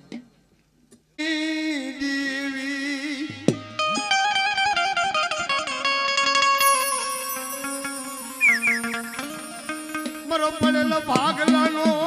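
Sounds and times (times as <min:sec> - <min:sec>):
string instrument melody: 0:03.7 - 0:12.0.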